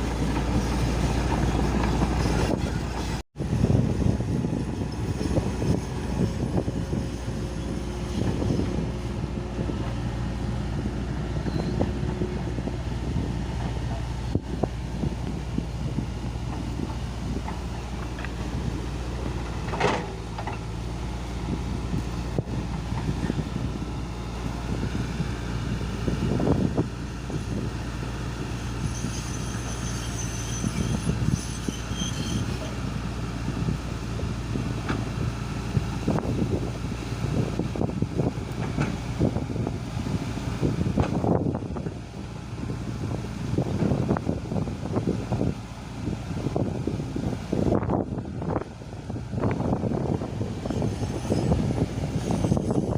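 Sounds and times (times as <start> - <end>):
excavator diesel engine running: 0.0 - 52.9
machine knocks and clanks: 19.4 - 20.7.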